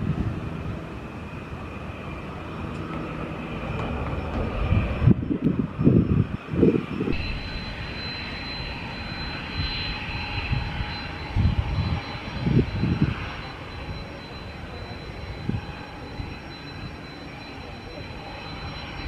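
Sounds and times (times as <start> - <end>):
jet engines rushing: 0.0 - 19.0
thin high jet whine: 0.0 - 19.0
low gusty rumbles: 3.7 - 14.2.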